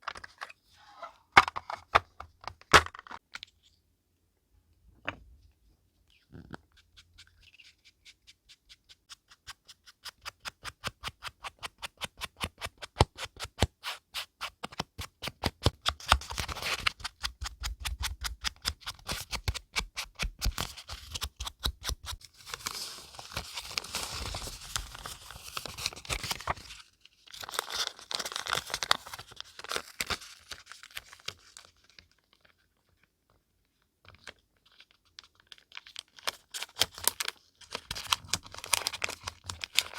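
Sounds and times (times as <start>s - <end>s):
paper rustling and scraping: 22.1s - 31.4s.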